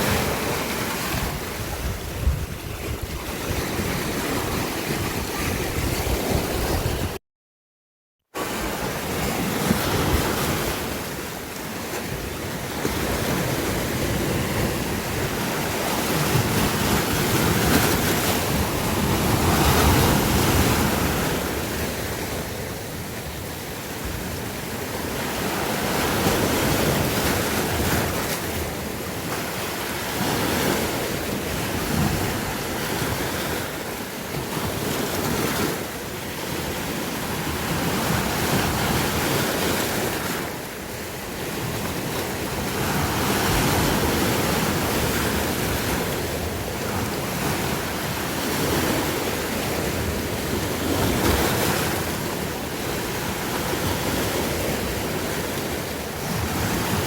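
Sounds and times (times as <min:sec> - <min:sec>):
sea waves washing: 0:00.0 - 0:07.2
wind on microphone: 0:00.0 - 0:07.2.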